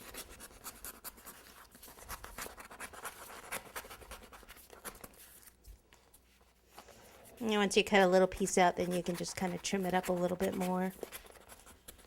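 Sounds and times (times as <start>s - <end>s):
craft knife cutting cardboard: 0.0s - 5.6s, 8.2s - 12.0s.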